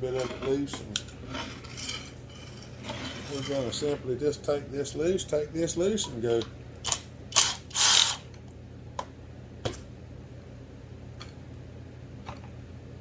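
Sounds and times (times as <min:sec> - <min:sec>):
tools scraping and rattling: 0:00.0 - 0:04.2.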